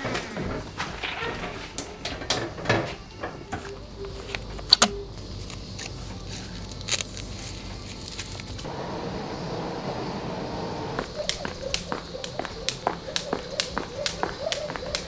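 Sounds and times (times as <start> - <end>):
sharp clicks: 11.0 - 15.0
objects being handled clicking: 11.1 - 15.0.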